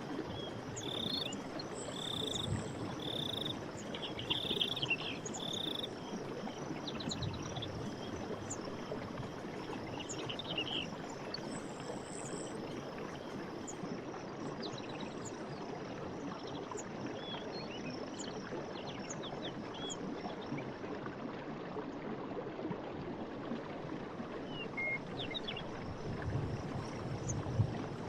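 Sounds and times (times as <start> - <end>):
flowing water: 0.0 - 28.0.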